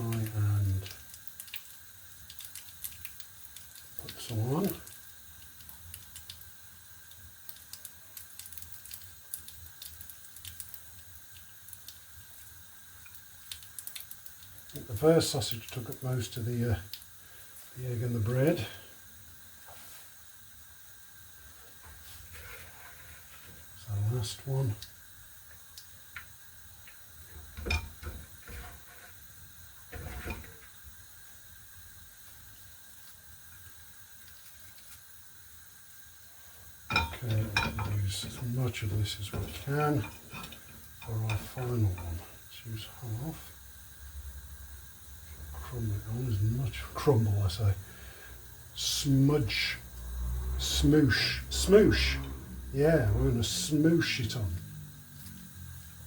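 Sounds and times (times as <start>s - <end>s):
wet squishing of hands: 0.0s - 12.4s, 13.0s - 16.0s.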